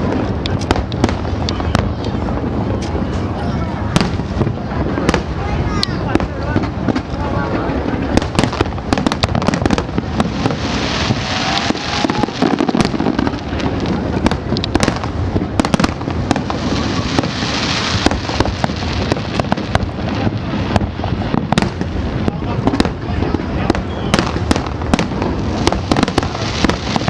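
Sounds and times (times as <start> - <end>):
fireworks bangs and pops: 0.0 - 27.0
hissing crackle of fireworks: 0.0 - 27.0.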